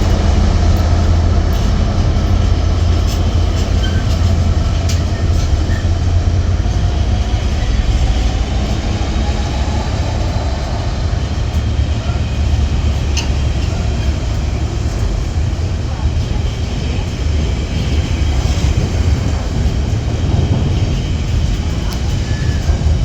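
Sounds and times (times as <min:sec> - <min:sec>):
train rumbling: 0:00.0 - 0:23.0.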